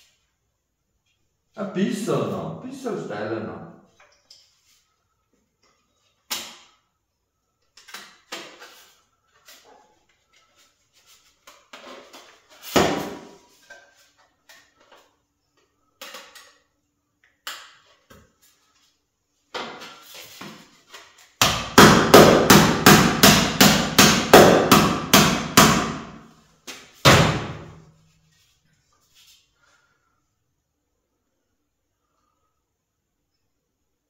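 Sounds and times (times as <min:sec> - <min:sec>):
hammer blows on sheet metal: 0:21.4 - 0:26.3.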